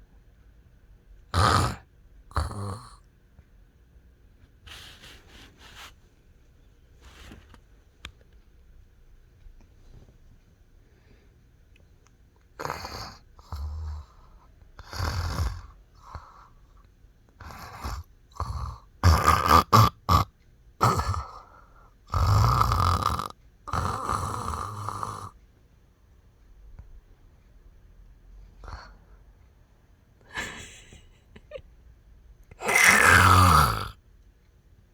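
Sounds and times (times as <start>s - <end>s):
person snoring loudly: 1.3s - 3.0s, 12.6s - 16.4s, 17.4s - 21.5s, 22.1s - 25.4s, 32.6s - 34.0s.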